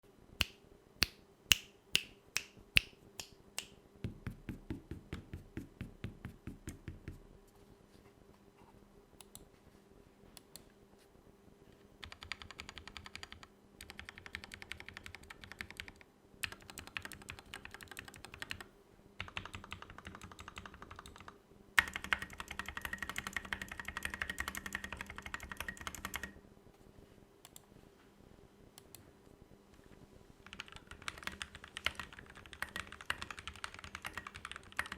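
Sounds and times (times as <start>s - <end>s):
mechanical keyboard typing: 12.0s - 26.4s, 30.4s - 34.9s.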